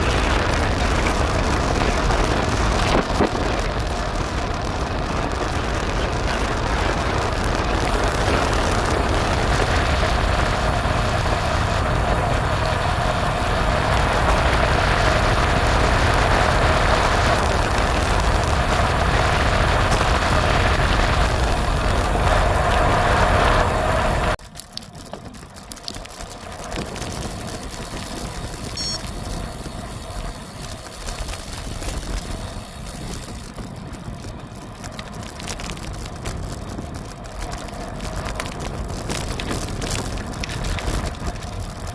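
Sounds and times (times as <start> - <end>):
wind on microphone: 0.0 - 24.4
tyres rolling on road: 0.0 - 41.9.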